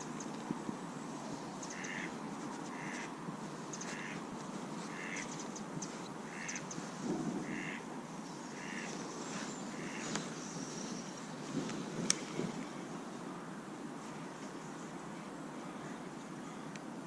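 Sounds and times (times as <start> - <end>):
outdoor background noise: 0.0 - 17.0
bird calling: 1.6 - 3.1, 3.7 - 4.2, 4.8 - 7.8, 8.4 - 11.2.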